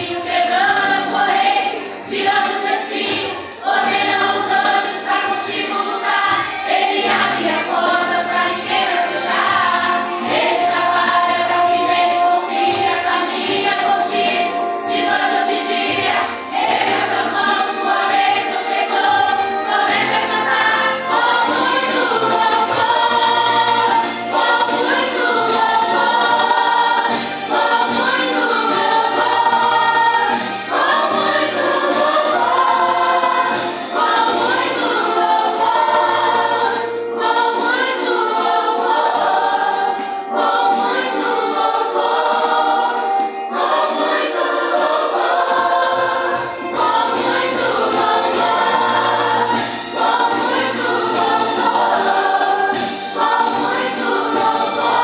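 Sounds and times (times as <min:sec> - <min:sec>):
choir singing worship song: 0:00.0 - 0:55.0.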